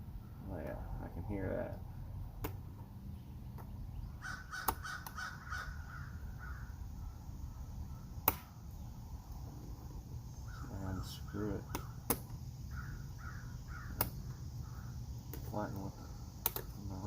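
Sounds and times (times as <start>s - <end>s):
crow cawing: 4.2s - 8.1s, 10.4s - 15.1s
sharp clicks: 13.9s - 14.3s, 15.2s - 16.8s.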